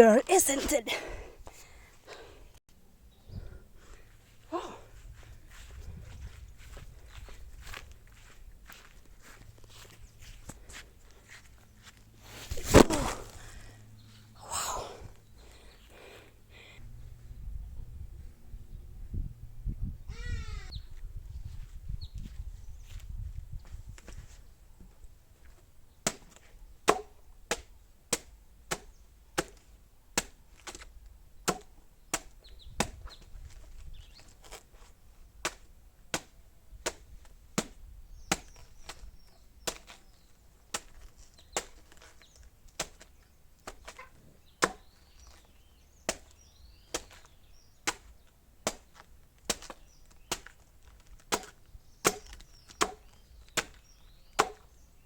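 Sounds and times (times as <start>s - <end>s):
chopping banana stem: 26.0s - 29.6s, 31.5s - 33.0s, 35.4s - 39.0s, 44.6s - 45.0s, 46.0s - 53.8s, 54.4s - 54.7s.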